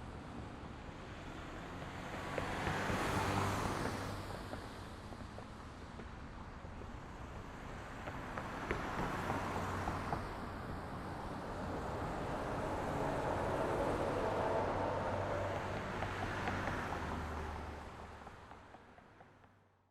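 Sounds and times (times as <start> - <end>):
vehicles passing: 0.0 - 19.6
low engine hum: 8.5 - 18.7.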